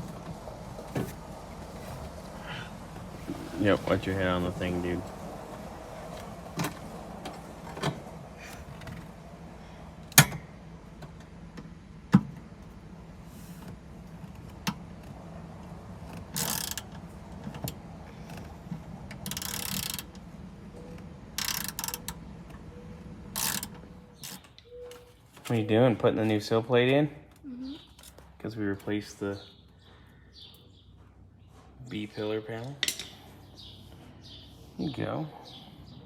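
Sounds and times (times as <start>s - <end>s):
steady low hum: 0.0s - 24.3s
clicks and knocks of tools: 32.6s - 33.2s.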